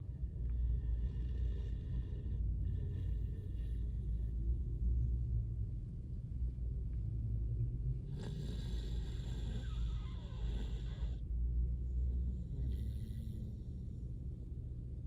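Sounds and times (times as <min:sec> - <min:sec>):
dog snoring: 0:00.0 - 0:04.7, 0:08.0 - 0:14.6.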